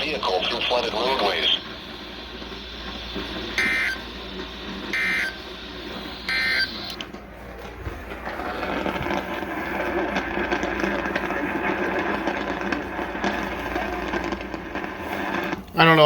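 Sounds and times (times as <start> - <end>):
harsh digital warbles: 0.0 - 4.2, 4.8 - 7.0
steady rough noise: 0.0 - 16.0.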